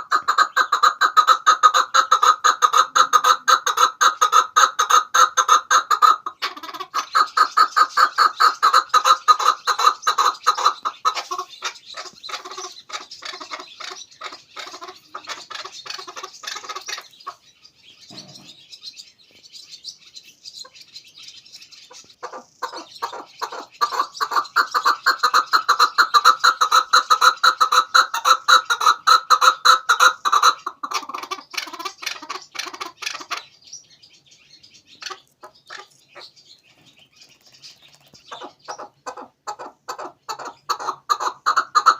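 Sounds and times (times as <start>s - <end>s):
partridge clucking calls: 0.0s - 41.9s.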